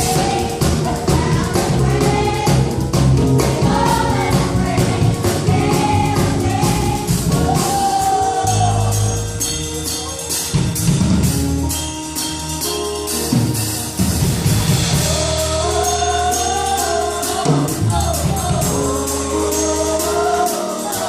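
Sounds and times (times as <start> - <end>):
choir singing gospel song: 0.0 - 9.5, 14.5 - 21.0
band playing: 0.0 - 21.0
percussion beat: 0.0 - 21.0.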